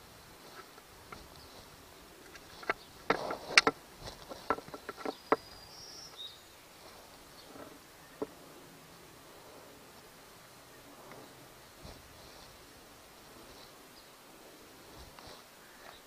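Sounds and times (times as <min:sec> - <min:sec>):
plastic parts clicking and knocking: 0:02.2 - 0:05.5
faint high chirp: 0:05.1 - 0:08.2
brief rustle: 0:11.0 - 0:12.6, 0:14.9 - 0:16.0.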